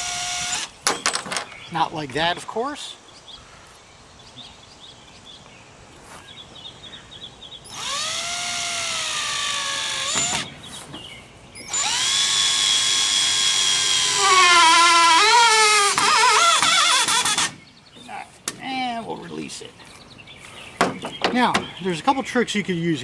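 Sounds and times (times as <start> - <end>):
power drill driving screw into wood: 0.0 - 1.2, 7.7 - 10.5, 11.6 - 17.6.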